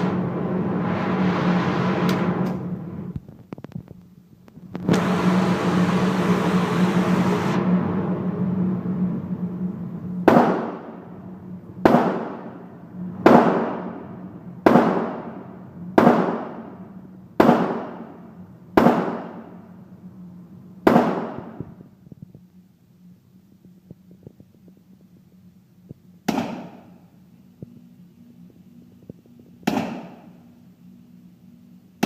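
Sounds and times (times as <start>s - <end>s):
rifle shots with echo: 10.2s - 11.0s, 11.8s - 12.6s, 13.2s - 14.0s, 14.6s - 15.4s, 16.0s - 16.8s, 17.4s - 18.2s, 18.8s - 19.5s, 20.8s - 21.6s.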